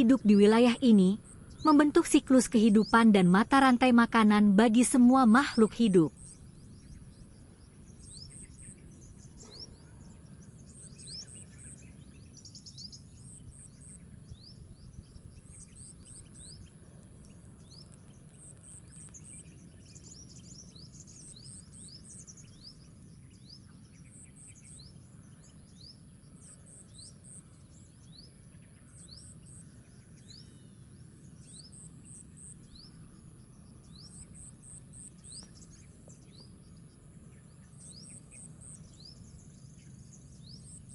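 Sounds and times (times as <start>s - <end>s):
insects high pips: 0.0s - 9.3s.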